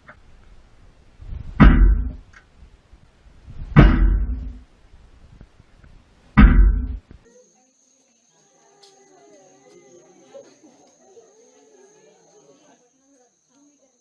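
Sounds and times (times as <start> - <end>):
loud ringing bangs: 1.6 - 2.2, 3.8 - 4.6, 6.4 - 7.0.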